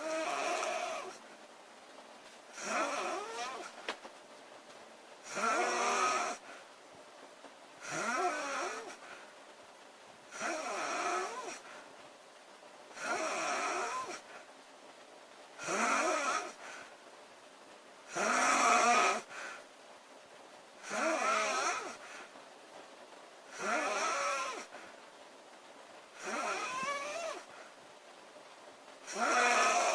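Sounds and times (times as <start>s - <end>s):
woman snoring: 0.0s - 1.2s, 2.5s - 3.7s, 5.2s - 6.5s, 7.8s - 9.1s, 10.3s - 11.7s, 13.0s - 14.3s, 15.6s - 16.6s, 18.1s - 19.4s, 20.8s - 22.0s, 23.5s - 24.8s, 26.2s - 27.5s, 29.0s - 29.9s.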